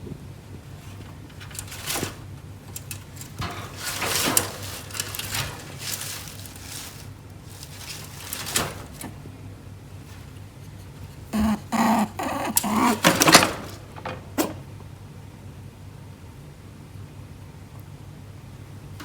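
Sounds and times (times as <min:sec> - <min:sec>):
rabbit snorting: 0:10.2 - 0:14.7.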